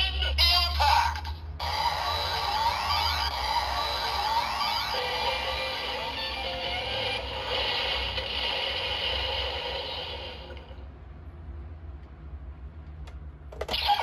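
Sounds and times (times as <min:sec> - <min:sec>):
electronic toy sound effect: 0:00.0 - 0:10.5, 0:13.6 - 0:14.0
toy handling noise: 0:13.5 - 0:14.0.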